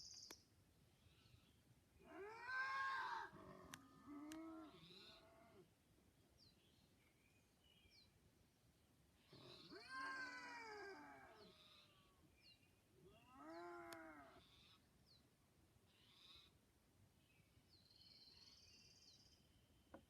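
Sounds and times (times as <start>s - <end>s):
animal wailing calls: 2.1s - 5.6s, 9.3s - 12.1s, 13.1s - 14.4s.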